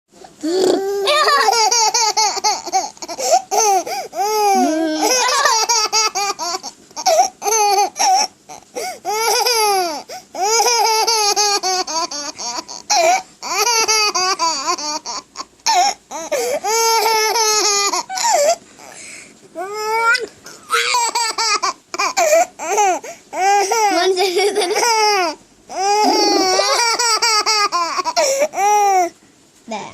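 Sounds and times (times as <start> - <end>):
high-pitched laughter: 1.0 - 2.0, 4.5 - 6.1, 26.0 - 27.3.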